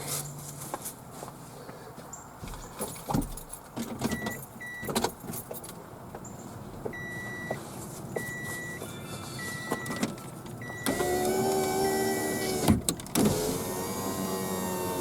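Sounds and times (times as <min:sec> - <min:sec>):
car warning chime beeps: 0:04.1 - 0:05.0, 0:06.9 - 0:07.6, 0:08.2 - 0:11.2.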